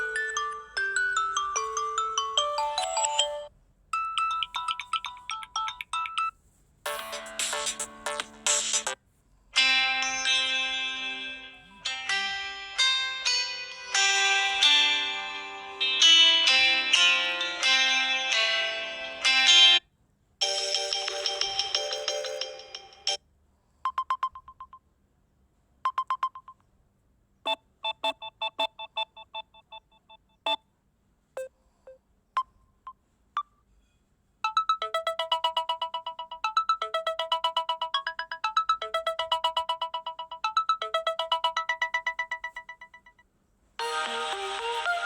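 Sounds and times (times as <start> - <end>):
electronic ringtone beeps and chimes: 0.0 - 9.0, 20.4 - 23.2, 27.5 - 30.6, 34.4 - 45.0
fast repeating ringtone melody: 0.0 - 9.0, 20.4 - 23.2, 27.5 - 30.6, 34.4 - 45.0.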